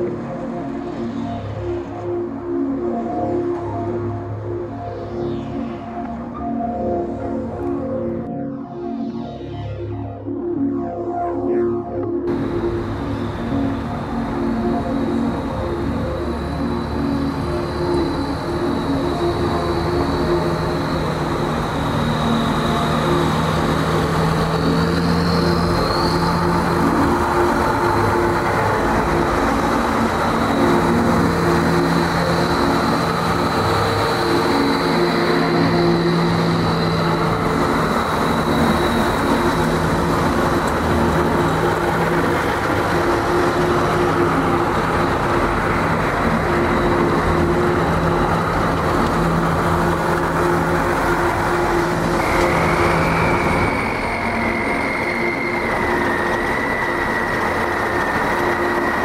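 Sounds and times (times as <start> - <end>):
high whine: 0.0 - 59.0
diesel truck engine running: 12.3 - 59.0.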